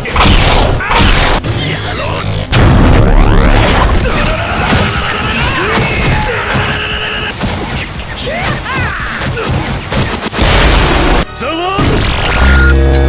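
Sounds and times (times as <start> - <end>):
background music: 10.4 - 13.0.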